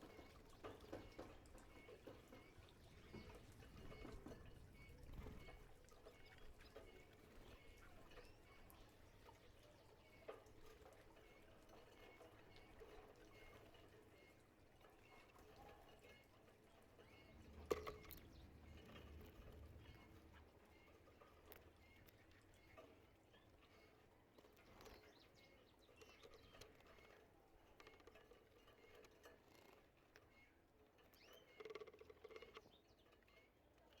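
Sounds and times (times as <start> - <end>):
birds clicking and pattering: 0.0 - 34.0
canary chirps: 31.0 - 33.2.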